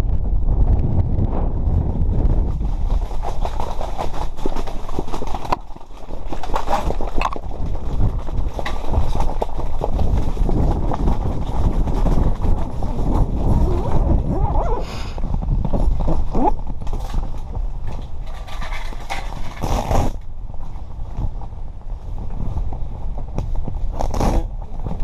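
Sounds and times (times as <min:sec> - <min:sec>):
wind buffeting microphone: 0:00.0 - 0:25.0
knocks and clatter: 0:02.3 - 0:14.1, 0:15.6 - 0:20.3.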